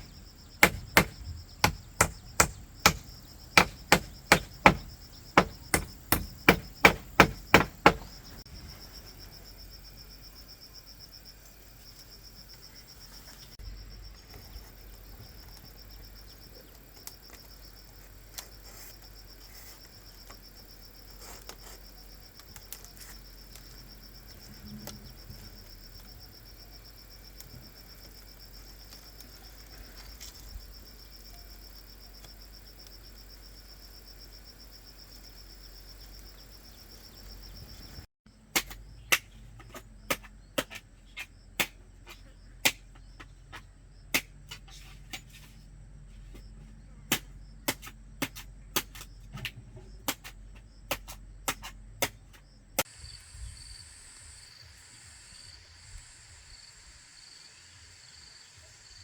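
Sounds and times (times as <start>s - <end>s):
crickets trilling: 0.0s - 59.0s
loud sharp knocks: 0.6s - 8.1s.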